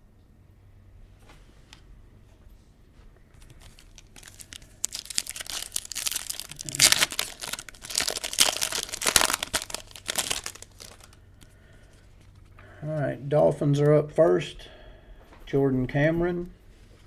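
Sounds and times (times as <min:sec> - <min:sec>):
wrapper tearing and crinkling: 0:03.4 - 0:11.2.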